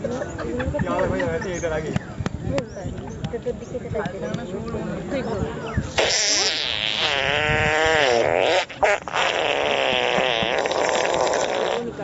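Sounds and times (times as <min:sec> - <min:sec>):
wet fart sound effect: 0:05.9 - 0:12.0.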